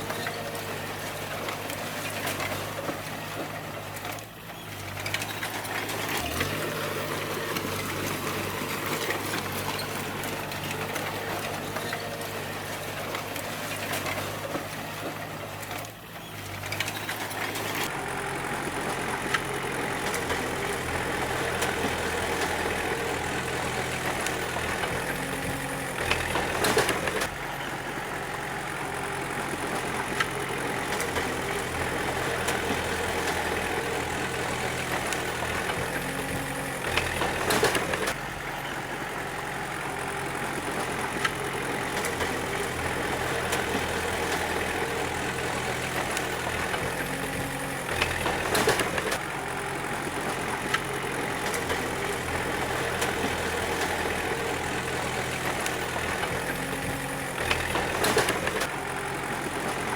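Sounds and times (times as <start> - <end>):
bulldozer clanking: 0.0 - 59.9
bulldozer diesel engine running: 0.0 - 59.9.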